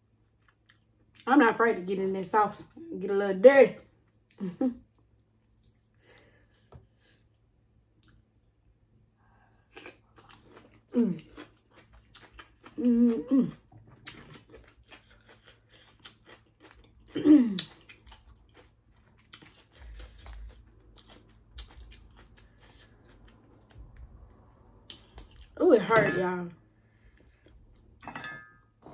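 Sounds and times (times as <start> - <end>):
wet chewing and crunching: 9.5 - 25.6.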